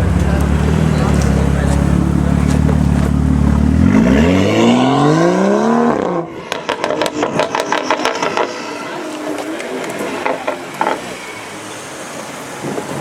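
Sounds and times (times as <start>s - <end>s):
exhaust pops and crackles: 0.0s - 3.7s, 6.5s - 11.1s
car engine accelerating: 0.0s - 13.0s.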